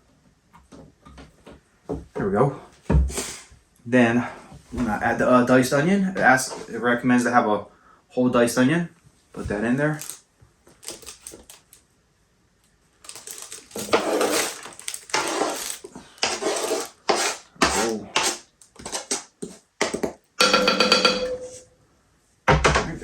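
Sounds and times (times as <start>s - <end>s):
utensil scraping against dishes: 13.8s - 19.6s.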